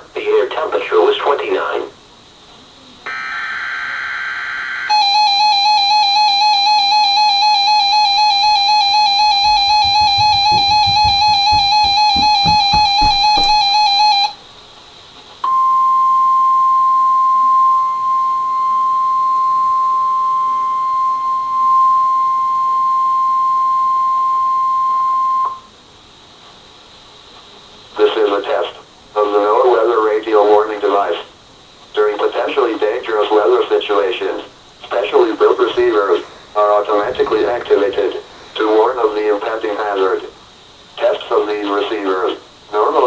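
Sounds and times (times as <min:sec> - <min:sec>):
warbling alarm tone: 0:03.1 - 0:14.3
steady warning alarm tone: 0:03.1 - 0:14.4
low knocks: 0:09.2 - 0:14.0.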